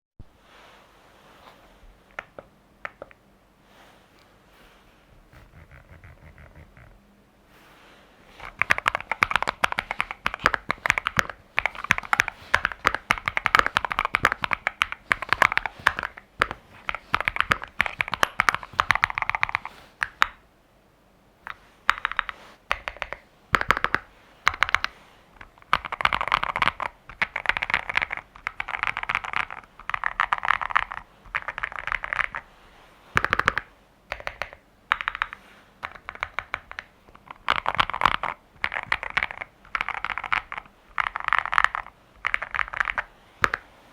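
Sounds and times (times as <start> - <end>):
mechanical keyboard typing: 8.4 - 20.3, 21.5 - 32.4, 33.2 - 43.7.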